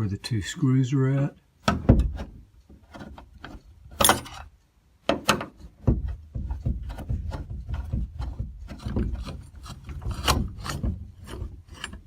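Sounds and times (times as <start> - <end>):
sharp knocks: 5.1 - 9.4
screwdriver clicking and scraping: 8.2 - 12.0.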